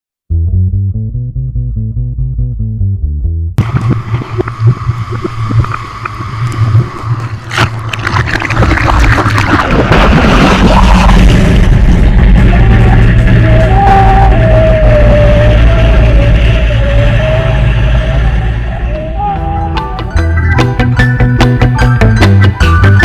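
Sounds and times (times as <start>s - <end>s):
engine rumble: 0.4s - 22.6s
noisy rushing: 3.6s - 19.8s
wavering high tone: 13.6s - 23.0s
rock music: 19.4s - 23.0s.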